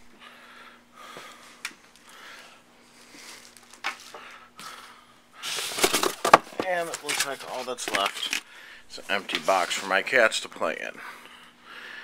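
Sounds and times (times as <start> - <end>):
packaging rustling: 3.2 - 4.2, 5.5 - 8.5.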